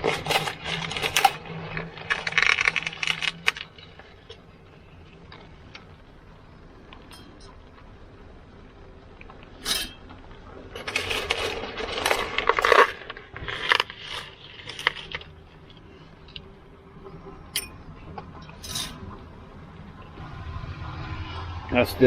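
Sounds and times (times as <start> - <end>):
metal kitchenware clinking: 7.1 - 7.6, 9.6 - 10.1, 17.5 - 17.8, 18.5 - 19.0.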